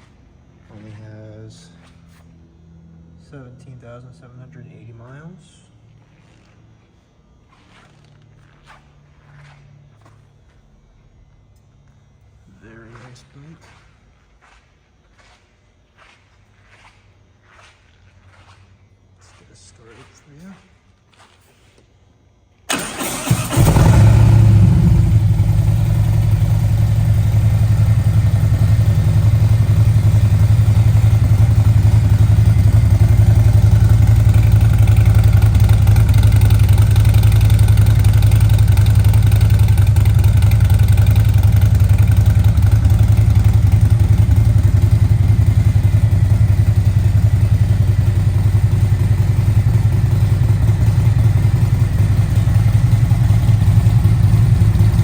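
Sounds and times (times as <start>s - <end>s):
motorcycle engine starting and idling: 22.6s - 55.0s.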